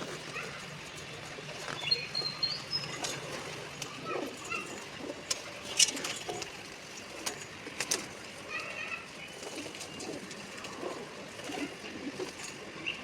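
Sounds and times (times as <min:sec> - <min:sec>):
small birds chirping: 0:00.0 - 0:03.4.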